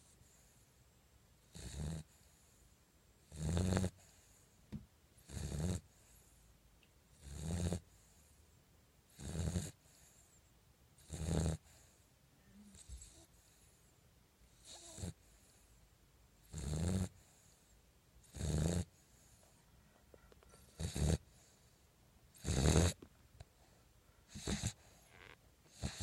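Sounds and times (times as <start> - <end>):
dog snoring: 1.4 - 4.5, 5.2 - 6.4, 7.1 - 8.4, 9.1 - 10.3, 11.0 - 12.0, 12.6 - 13.9, 14.5 - 15.8, 16.4 - 19.5, 20.5 - 23.0, 23.6 - 26.0.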